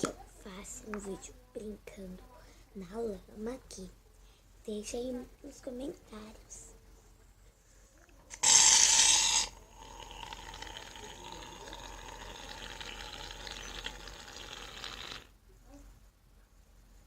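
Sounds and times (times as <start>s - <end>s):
aerosol can hissing: 8.3s - 9.6s.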